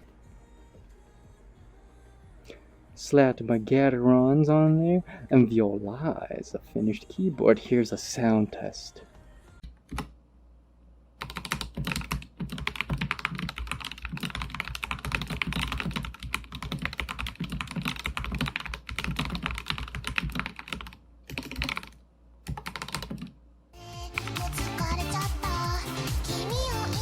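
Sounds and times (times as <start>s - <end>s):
music: 0.0s - 9.7s, 23.8s - 27.0s
keyboard typing: 11.2s - 23.4s.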